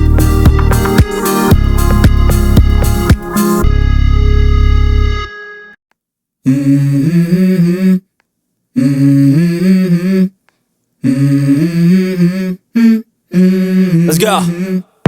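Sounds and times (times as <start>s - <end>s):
wordless hummed vocal: 6.4s - 10.4s, 11.0s - 15.0s.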